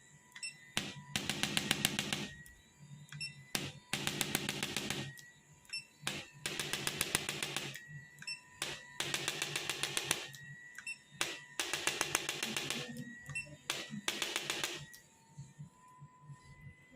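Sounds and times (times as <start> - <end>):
adjusting instrument clicking rapidly: 6.1 - 7.8, 8.6 - 10.3, 11.2 - 12.9, 14.1 - 14.8.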